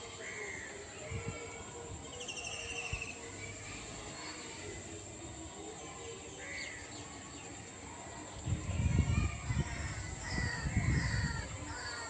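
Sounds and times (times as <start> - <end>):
bird trill: 2.1 - 3.6.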